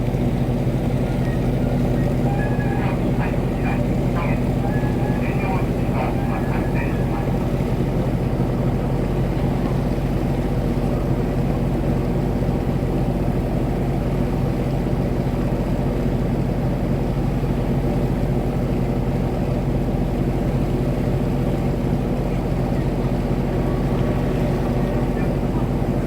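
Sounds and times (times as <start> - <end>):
boat engine droning: 0.0 - 26.0.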